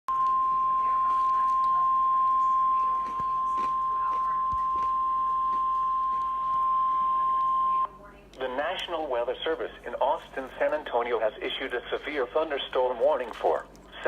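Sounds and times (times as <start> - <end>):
steady alarm tone: 0.1 - 13.2.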